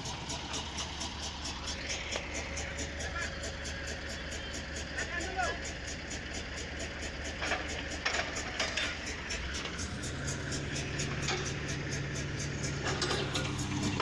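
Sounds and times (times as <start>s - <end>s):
diesel engine running: 0.0s - 14.0s
knocks and clanks: 7.3s - 14.0s.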